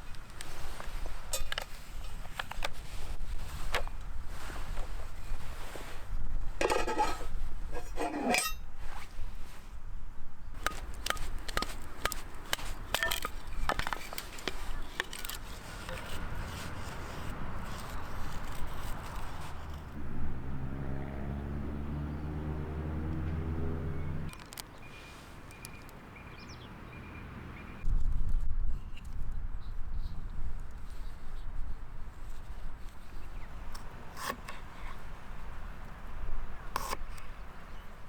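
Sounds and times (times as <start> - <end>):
cookware clinking and scraping: 1.3 - 2.2, 6.6 - 8.7, 12.9 - 16.6.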